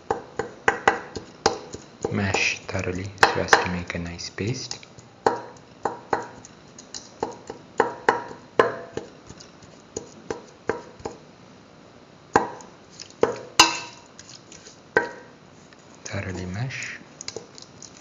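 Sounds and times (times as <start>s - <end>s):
masher knocking against pot: 0.1s - 2.4s, 5.3s - 6.4s, 7.2s - 9.1s, 12.4s - 12.6s.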